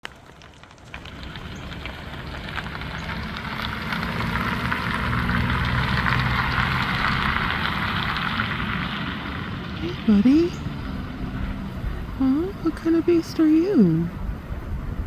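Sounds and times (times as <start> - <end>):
vehicle engine and tyre noise: 0.0 - 15.0.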